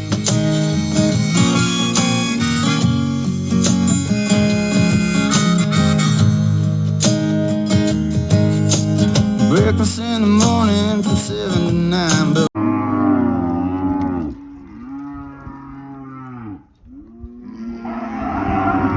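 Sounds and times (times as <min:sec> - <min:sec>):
harmonica: 0:00.0 - 0:12.5
acoustic guitar: 0:00.0 - 0:12.6.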